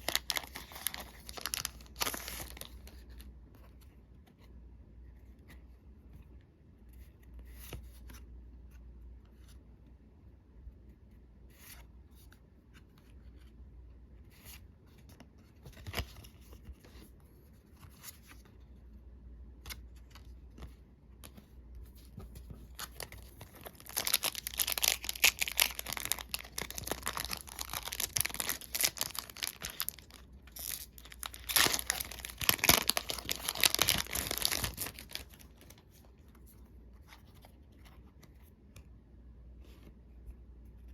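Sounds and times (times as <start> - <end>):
plastic wrapper crinkling and tearing: 0.0 - 2.9, 22.7 - 35.9.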